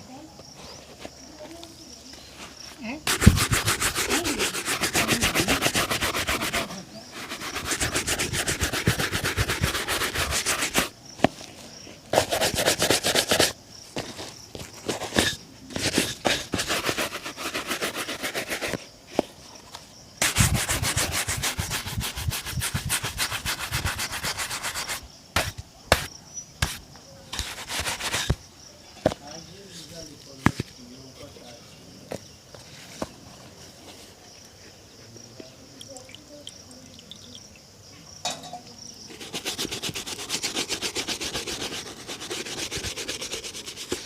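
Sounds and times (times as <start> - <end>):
shoe buffing rubbing strokes: 2.4 - 10.9, 12.1 - 18.9, 20.2 - 28.4, 39.1 - 44.0.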